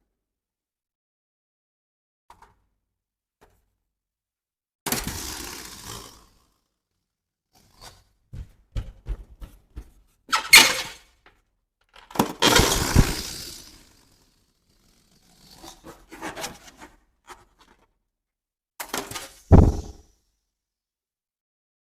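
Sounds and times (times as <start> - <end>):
balloon popping loudly: 19.5 - 20.0.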